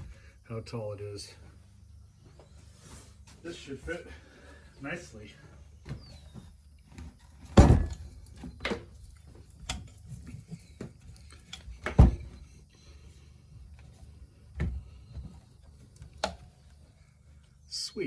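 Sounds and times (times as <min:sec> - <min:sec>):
loud knocks: 0:07.6 - 0:08.1.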